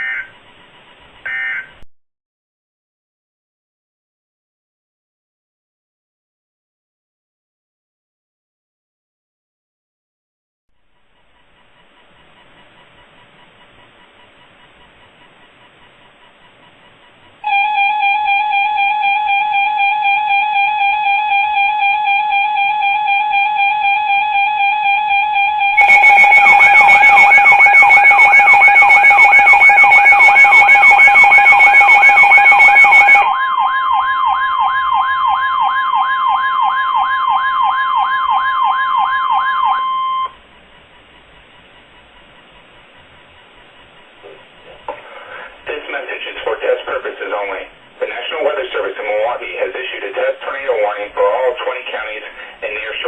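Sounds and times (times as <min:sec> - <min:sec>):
electronic alarm tone: 0:00.0 - 0:00.3, 0:01.3 - 0:01.8, 0:17.4 - 0:40.4
siren-like sweeps with hiss: 0:25.8 - 0:33.2.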